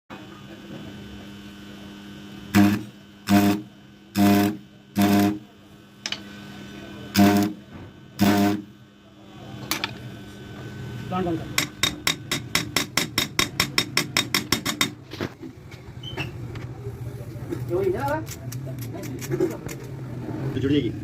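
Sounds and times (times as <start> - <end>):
steady electrical hum: 0.1 - 21.0
welding machine buzzing: 1.4 - 8.8.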